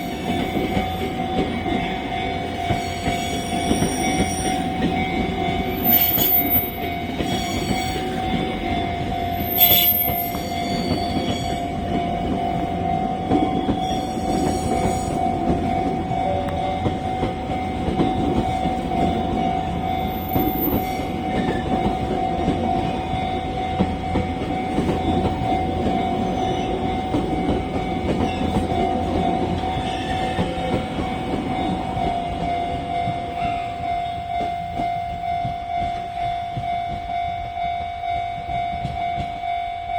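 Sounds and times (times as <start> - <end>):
train wheel squeals: 0.0 - 16.9, 18.0 - 23.0, 24.8 - 32.5
crossing warning bell: 0.0 - 39.9
train wheels on rails: 0.0 - 39.9.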